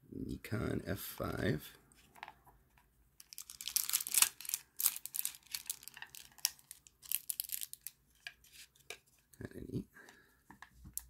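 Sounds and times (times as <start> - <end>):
plastic packaging crinkling: 3.2 - 8.7.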